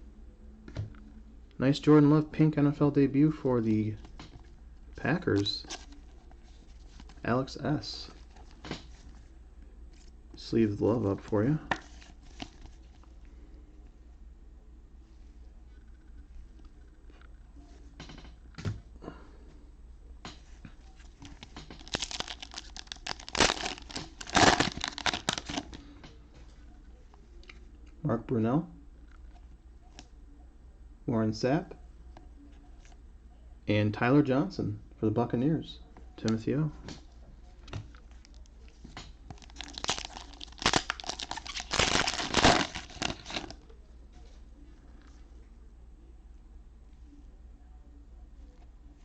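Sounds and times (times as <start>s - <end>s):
cellophane wrapper crinkling and tearing: 21.0s - 25.9s, 39.3s - 43.6s.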